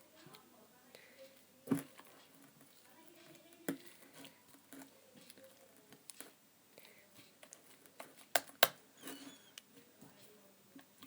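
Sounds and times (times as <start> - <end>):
sharp slime snaps: 8.3 - 8.8.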